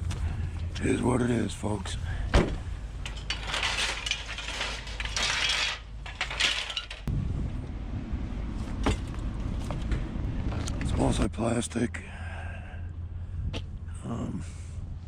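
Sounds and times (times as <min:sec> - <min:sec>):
low steady rumble: 0:00.0 - 0:15.0
trash rustling and scraping: 0:01.8 - 0:07.1, 0:08.6 - 0:10.9.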